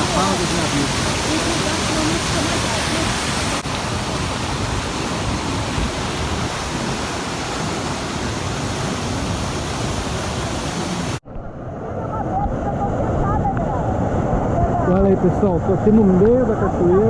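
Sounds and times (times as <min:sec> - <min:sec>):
waterfall rushing: 0:00.0 - 0:11.2.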